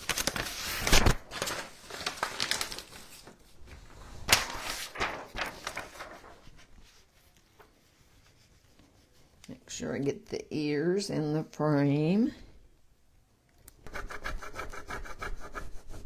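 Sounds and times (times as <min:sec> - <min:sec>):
rustling: 0:00.0 - 0:09.4.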